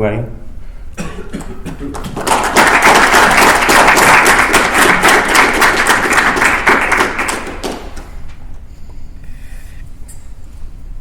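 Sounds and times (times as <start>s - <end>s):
audience applauding: 1.3s - 8.1s.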